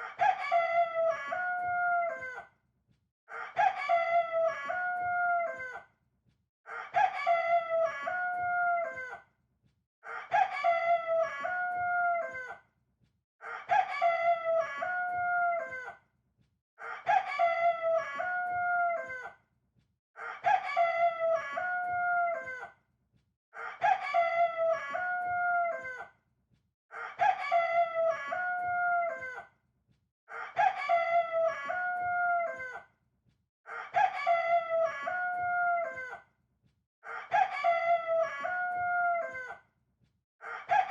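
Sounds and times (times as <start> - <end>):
rooster crowing: 0.0 - 2.4, 3.4 - 5.8, 6.7 - 9.2, 10.1 - 12.6, 13.4 - 16.0, 16.9 - 19.3, 20.2 - 22.7, 23.6 - 26.1, 27.0 - 29.4, 30.4 - 32.8, 33.7 - 36.2, 37.1 - 39.6, 40.4 - 40.9.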